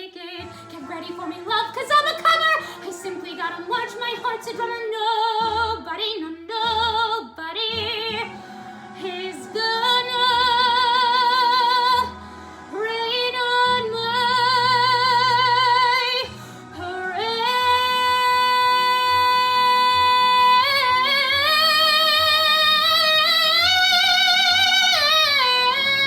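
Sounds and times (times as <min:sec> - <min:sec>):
woman belting a show tune: 0:00.0 - 0:26.0.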